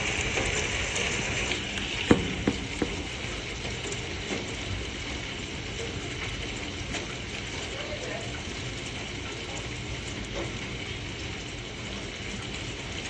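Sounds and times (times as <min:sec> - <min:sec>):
rain pelting down: 0:00.0 - 0:13.0.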